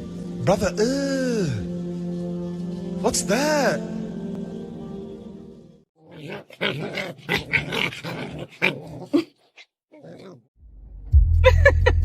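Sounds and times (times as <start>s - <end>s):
dog grumbling and whining: 6.0s - 10.5s.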